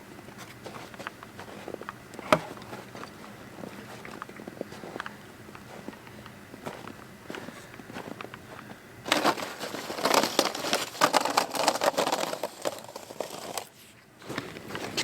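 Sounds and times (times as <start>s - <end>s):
close crinkling and rustling: 0.2s - 15.0s
rapid crackles: 7.3s - 13.7s.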